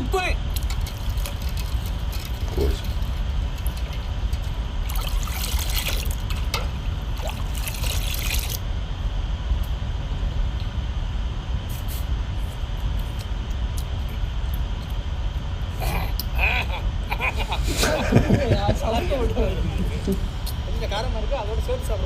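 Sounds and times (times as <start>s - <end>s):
low rumble: 0.0s - 22.0s
spice water splashing in a pot: 0.6s - 8.6s.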